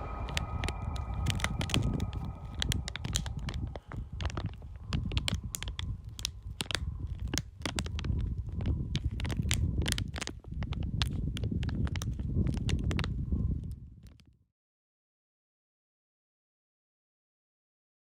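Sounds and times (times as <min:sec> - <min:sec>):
steady low rumble: 0:00.0 - 0:09.8
crackling and crunching clicks: 0:02.6 - 0:13.1.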